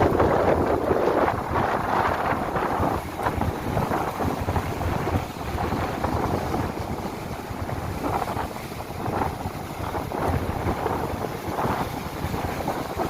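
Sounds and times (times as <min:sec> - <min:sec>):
sea waves breaking on beach: 0:00.0 - 0:13.0
wind buffeting microphone: 0:00.0 - 0:13.0.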